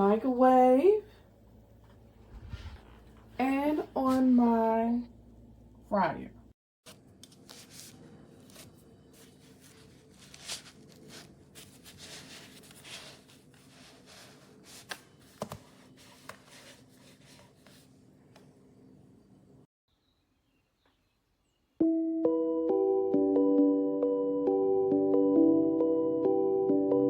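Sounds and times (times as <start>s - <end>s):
rustling while handling: 6.9s - 18.0s.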